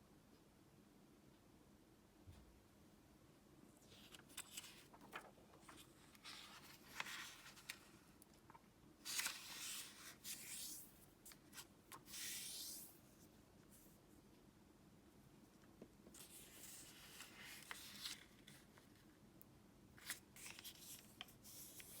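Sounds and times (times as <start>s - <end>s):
paper crackles and clicks: 3.9s - 12.7s, 16.1s - 19.0s, 20.0s - 22.0s
paper rustling and brushing: 3.9s - 13.0s, 16.2s - 19.0s, 20.0s - 22.0s.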